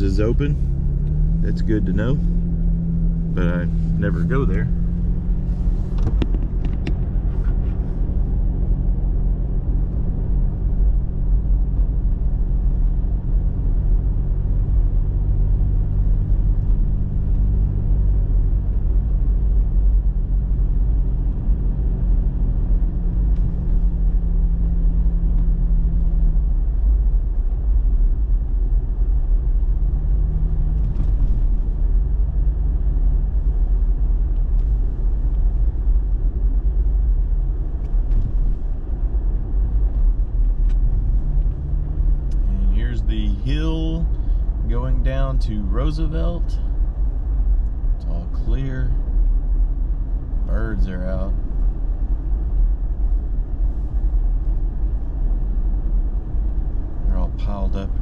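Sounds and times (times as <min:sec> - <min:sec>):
truck engine humming: 0:00.0 - 0:08.8
road rumble: 0:00.0 - 0:58.0.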